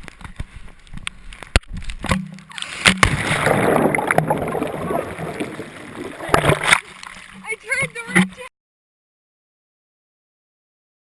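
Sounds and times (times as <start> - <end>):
person splashing into water: 2.6 - 7.4.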